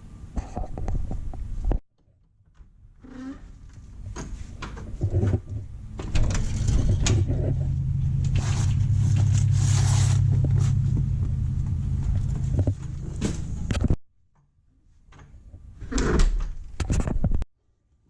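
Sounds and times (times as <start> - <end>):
engine running steadily: 5.7 - 13.8.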